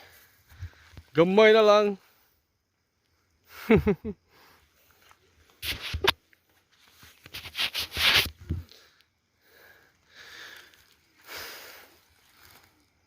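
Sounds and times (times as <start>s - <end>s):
person breathing hard: 8.6s - 12.1s.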